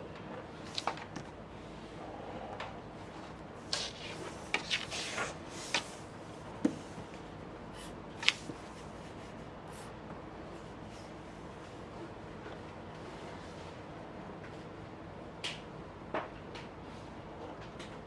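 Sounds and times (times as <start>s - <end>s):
drawing tool scratching paper: 3.7s - 6.0s.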